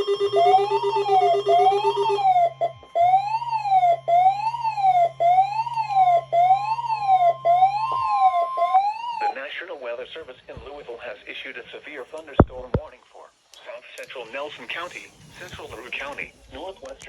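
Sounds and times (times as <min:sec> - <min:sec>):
rising and falling alert tone: 0:00.0 - 0:09.3
steady high tone: 0:00.0 - 0:09.4.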